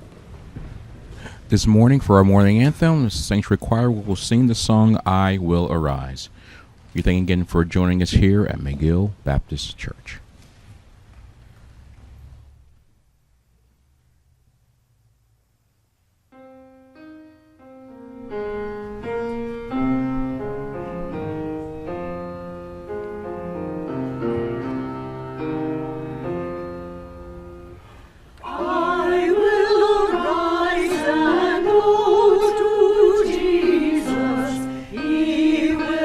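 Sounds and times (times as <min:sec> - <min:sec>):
piano chords: 0:16.3 - 0:36.0
choir singing: 0:28.4 - 0:36.0.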